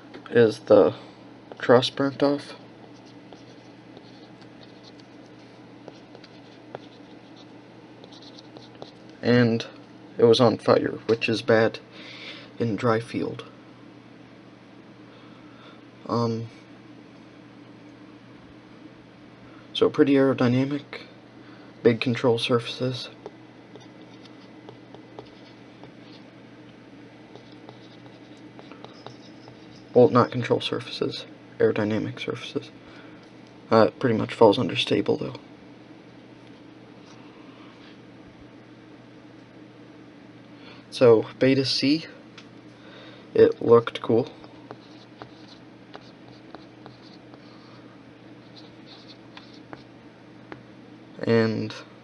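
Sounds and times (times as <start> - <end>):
low room hum: 0.0 - 52.0
soft scratching: 1.6 - 9.2, 22.7 - 26.3, 27.3 - 30.7, 43.4 - 47.8, 48.4 - 49.9.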